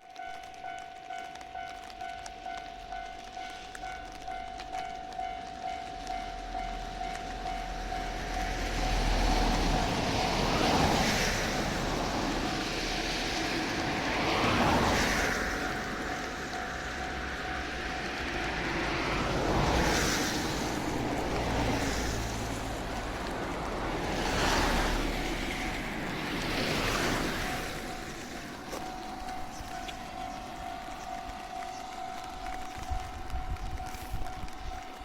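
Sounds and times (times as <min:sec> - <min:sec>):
level crossing warning bell ringing: 0:00.0 - 0:10.0, 0:15.2 - 0:19.4, 0:26.8 - 0:35.0
train passing: 0:00.0 - 0:35.0.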